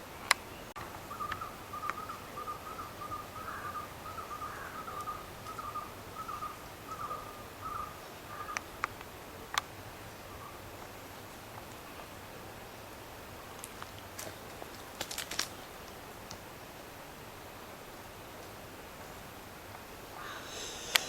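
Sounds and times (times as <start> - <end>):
bird calling repeated notes: 0.4 - 8.6.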